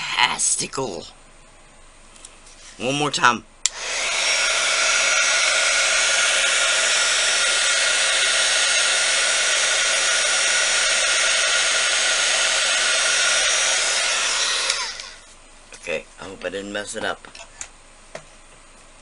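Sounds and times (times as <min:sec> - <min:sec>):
hot-air blower rushing air: 0:03.6 - 0:15.4.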